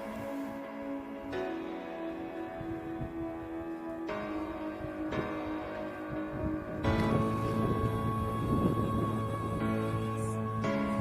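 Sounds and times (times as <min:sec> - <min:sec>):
droning music chords: 0:00.0 - 0:11.0.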